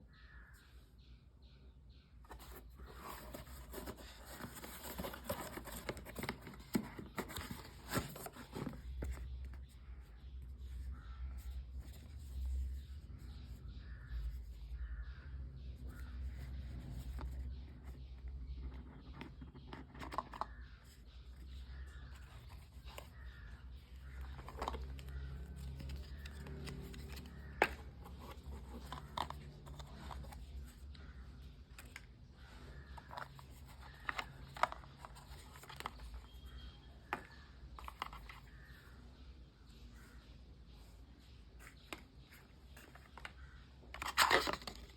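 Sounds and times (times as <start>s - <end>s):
packaging clicks and taps: 2.3s - 9.7s, 16.8s - 20.7s, 21.4s - 38.7s, 41.7s - 44.9s
cardboard and plastic rustling: 2.3s - 9.8s, 16.4s - 38.7s, 41.6s - 44.9s.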